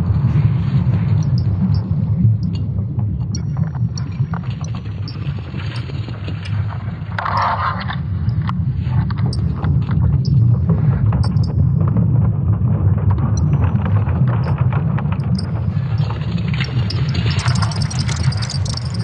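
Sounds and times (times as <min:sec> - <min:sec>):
deep steady rumble: 0:00.0 - 0:19.0
crackling clicks: 0:01.2 - 0:02.6, 0:03.3 - 0:06.6, 0:11.2 - 0:11.6, 0:13.2 - 0:19.0.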